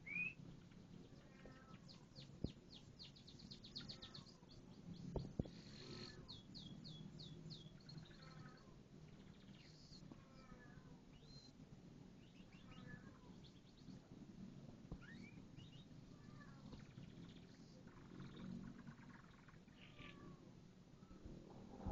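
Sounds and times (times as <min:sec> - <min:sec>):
canary chirping: 0:01.3 - 0:08.6, 0:15.0 - 0:20.2.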